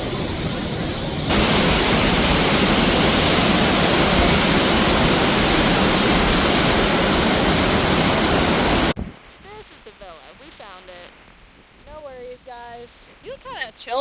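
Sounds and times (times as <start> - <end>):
waterfall rushing: 0.0 - 9.0.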